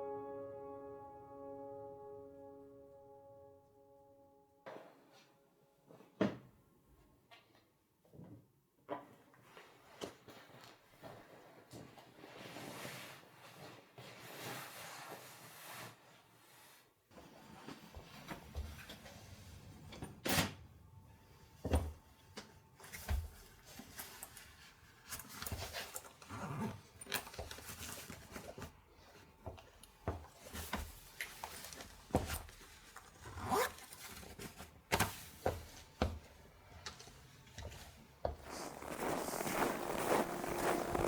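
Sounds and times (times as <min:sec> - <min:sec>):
close rustling: 0:38.4 - 0:41.0.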